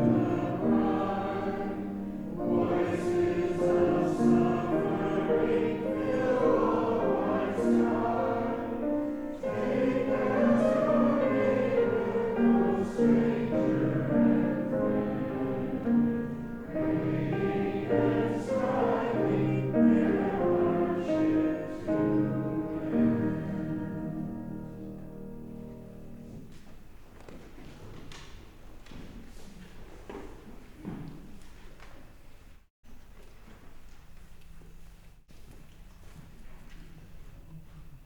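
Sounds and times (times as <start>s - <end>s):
congregation singing a hymn: 0.0s - 25.9s.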